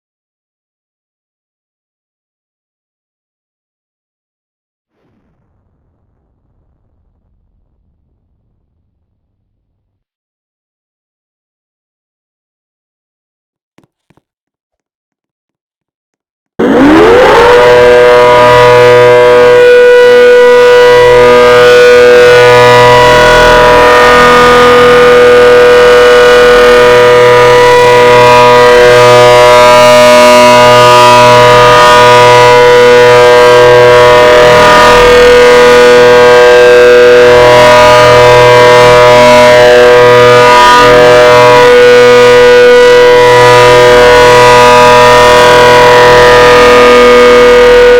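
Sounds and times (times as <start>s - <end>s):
outdoor warning siren: 16.6s - 47.9s.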